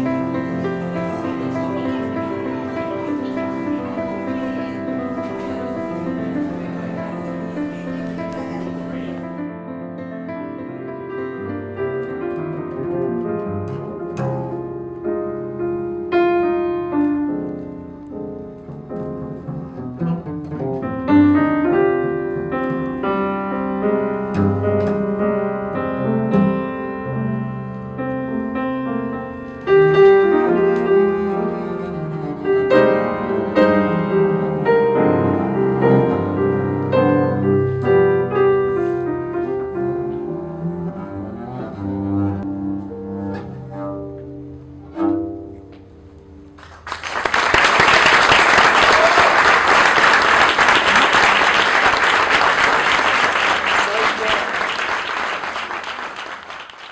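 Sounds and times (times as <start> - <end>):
piano: 0.0 - 56.9
double bass: 12.4 - 16.8, 18.2 - 28.9, 29.7 - 46.7.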